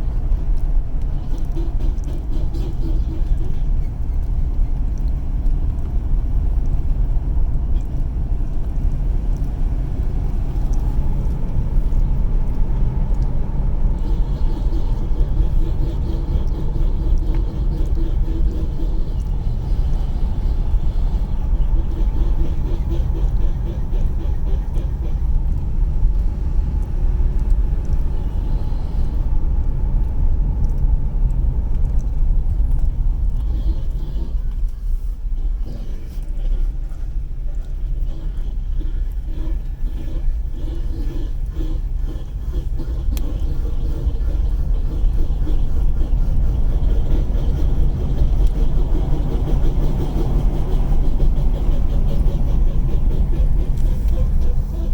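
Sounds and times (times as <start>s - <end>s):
faint hum: 0.0s - 54.9s
road and drivetrain rumble: 0.0s - 54.9s
fast rhythmic ticking: 38.2s - 54.9s.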